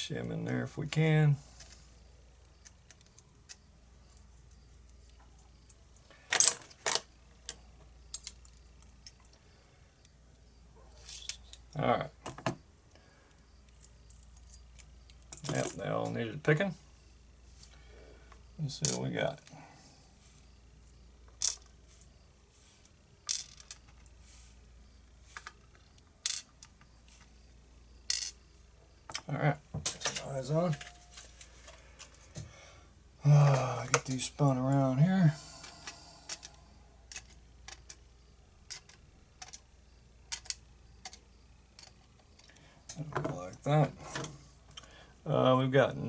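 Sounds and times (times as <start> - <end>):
metal lock parts clinking: 5.7 - 9.2, 38.7 - 39.6
small metal lock parts clinking: 5.7 - 9.3, 11.0 - 12.5, 13.7 - 15.9, 36.2 - 38.0, 38.7 - 39.6, 40.3 - 41.2.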